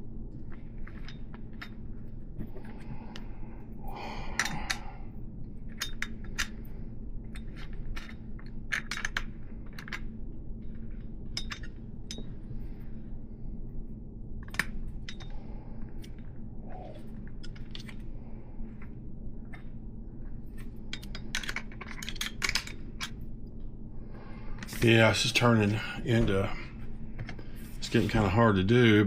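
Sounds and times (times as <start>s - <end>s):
steady low hum: 0.0s - 29.0s
small metal parts clinking: 20.9s - 23.2s.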